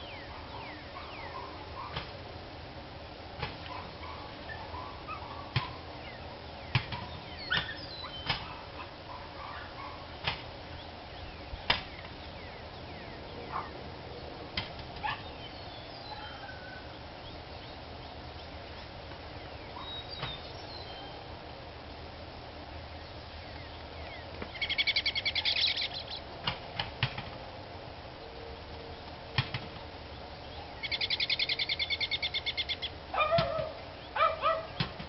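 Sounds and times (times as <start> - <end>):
small birds chirping: 0.0 - 2.2, 3.6 - 21.5, 22.7 - 26.3, 28.2 - 35.0
dog barking: 0.3 - 2.0, 3.7 - 5.8, 8.4 - 10.1, 13.5 - 13.8, 15.0 - 15.3, 33.1 - 34.8.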